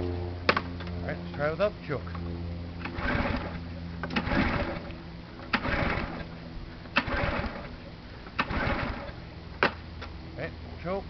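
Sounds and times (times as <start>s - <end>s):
engine cranking without firing: 2.0s - 9.8s
recoil starter pulled: 2.8s - 9.2s.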